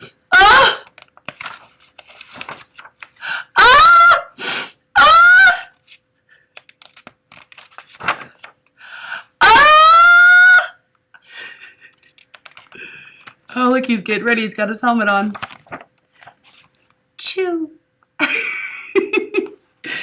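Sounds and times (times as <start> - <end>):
faint clicks and rustling: 11.8 - 13.5.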